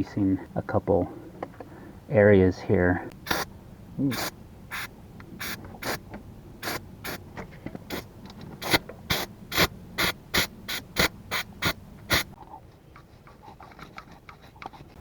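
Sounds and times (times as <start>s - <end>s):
spray bottle hissing sprays: 4.1s - 6.0s, 6.6s - 7.2s, 8.6s - 12.4s.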